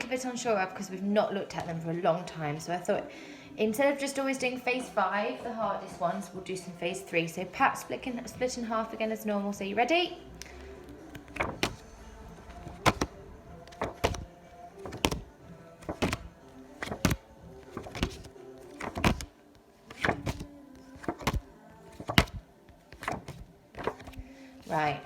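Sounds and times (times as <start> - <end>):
flashcards flicking: 10.5 - 11.9, 12.5 - 24.9.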